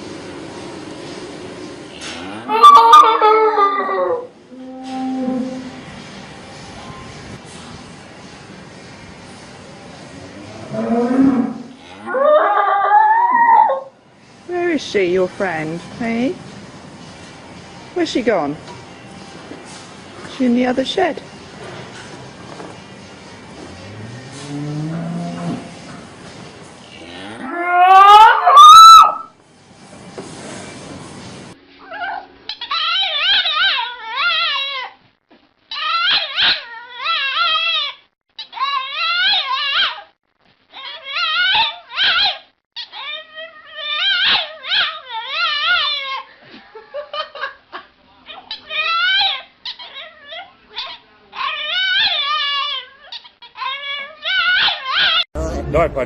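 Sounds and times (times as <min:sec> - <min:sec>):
cow mooing: 0:02.0 - 0:05.9, 0:10.4 - 0:12.4, 0:23.8 - 0:25.9, 0:26.9 - 0:28.2
dog howling and whining: 0:02.4 - 0:05.6, 0:12.0 - 0:13.9, 0:27.4 - 0:29.3, 0:31.8 - 0:35.0, 0:35.7 - 0:40.1, 0:40.8 - 0:46.3, 0:48.6 - 0:55.3.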